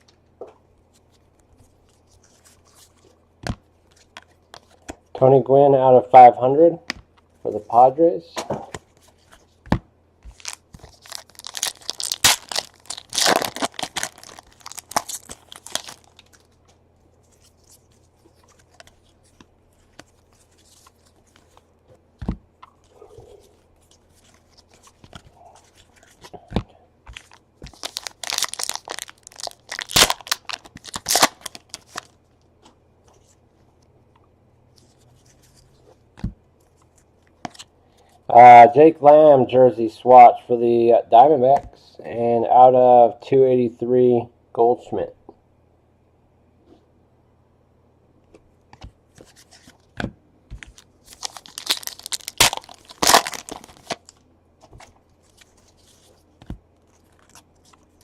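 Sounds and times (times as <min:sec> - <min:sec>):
card pack wrappers tearing: 0:10.3 - 0:16.6, 0:27.2 - 0:32.2, 0:50.7 - 0:54.2.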